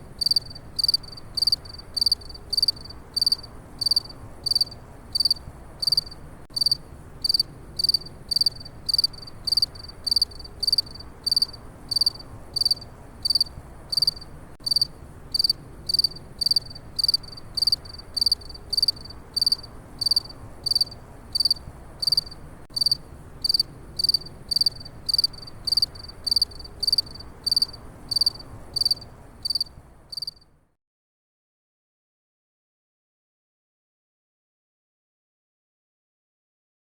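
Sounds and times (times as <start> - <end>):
faint background hiss: 0.0 - 30.8
cricket chirping: 0.2 - 30.4.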